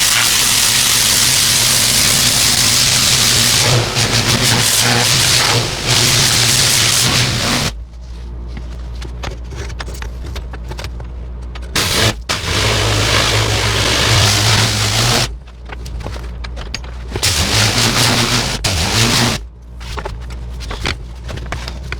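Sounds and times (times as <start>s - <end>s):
pressure washer motor humming: 0.0s - 7.8s, 11.8s - 15.3s, 17.2s - 19.4s
pressure washer spray hissing: 0.0s - 7.8s, 11.8s - 15.3s, 17.2s - 19.4s.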